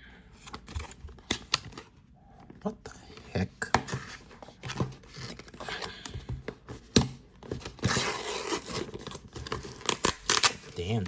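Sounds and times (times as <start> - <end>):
packaging tearing: 7.8 - 11.0.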